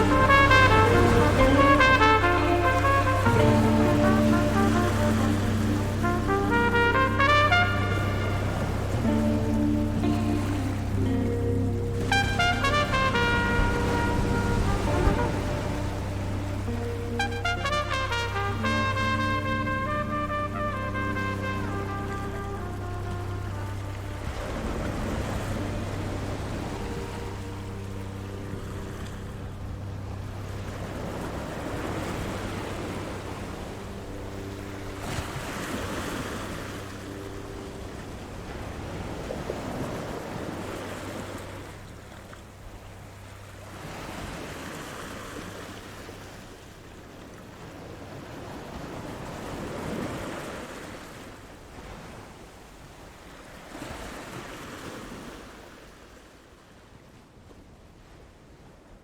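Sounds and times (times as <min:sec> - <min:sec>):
low hum: 0:00.0 - 0:44.2
sea waves breaking: 0:00.0 - 0:59.0.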